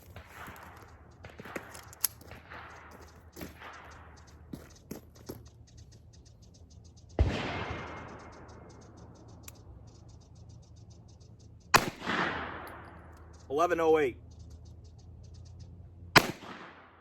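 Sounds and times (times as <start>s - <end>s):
pistol shots with echo: 0.0s - 4.1s, 7.2s - 8.7s, 11.7s - 13.1s, 16.2s - 17.0s.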